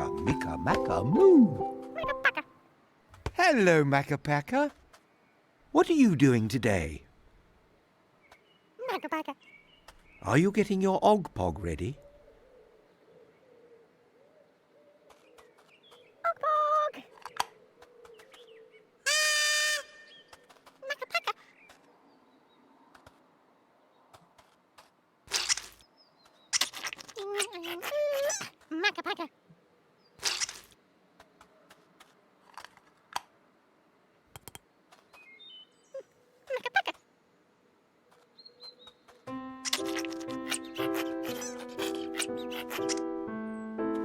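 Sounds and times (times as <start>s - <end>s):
high chirping tones: 0.0s - 2.6s, 39.3s - 44.0s
high-pitched toy-like tones: 0.0s - 2.6s
soft garden birdsong: 0.0s - 44.0s.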